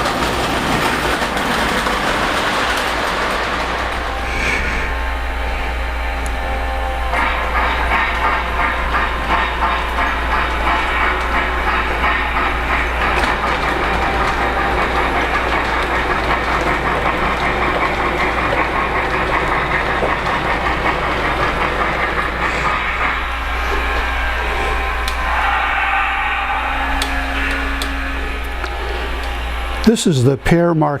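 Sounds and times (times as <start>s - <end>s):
model train wheels clattering: 0.0s - 30.4s
model locomotive sound effects: 0.0s - 31.0s.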